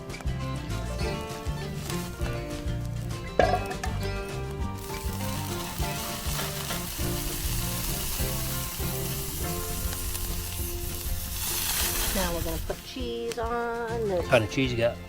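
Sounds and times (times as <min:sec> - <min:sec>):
background music: 0:00.0 - 0:15.0
food sizzling in a pan: 0:01.1 - 0:13.1.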